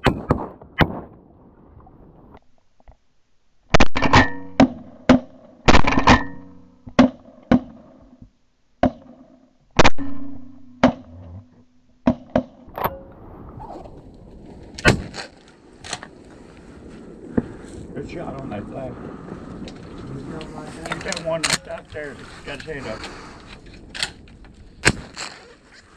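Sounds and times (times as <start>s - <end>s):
shotgun blasts: 0.0s - 1.3s, 3.7s - 7.9s, 14.8s - 15.4s, 24.8s - 25.4s.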